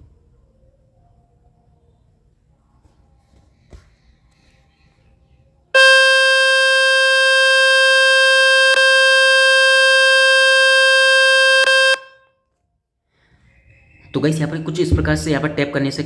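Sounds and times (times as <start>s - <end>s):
buzzy speaker tone: 5.8s - 12.2s.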